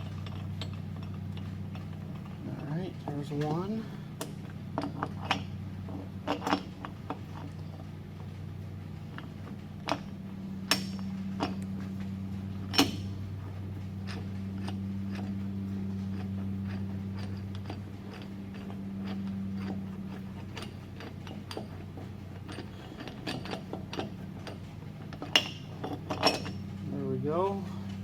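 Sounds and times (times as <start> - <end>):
low hum: 0.0 - 28.0.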